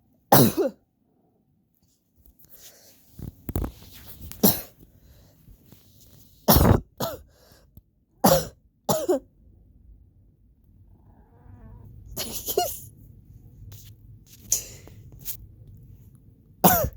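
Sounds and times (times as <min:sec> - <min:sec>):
person coughing: 0:00.3 - 0:00.8, 0:04.4 - 0:04.8, 0:06.5 - 0:07.3, 0:08.2 - 0:09.2, 0:12.2 - 0:12.9, 0:16.6 - 0:16.9.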